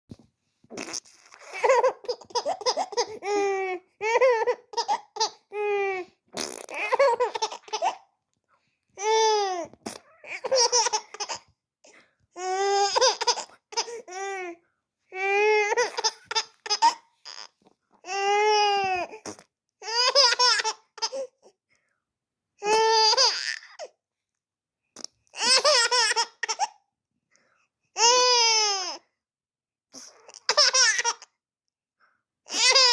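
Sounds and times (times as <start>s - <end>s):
baby laughing: 1.4s - 5.6s, 6.7s - 8.1s, 10.2s - 11.5s, 12.5s - 14.1s, 15.6s - 17.6s, 19.8s - 21.3s, 25.4s - 26.8s, 30.3s - 31.3s.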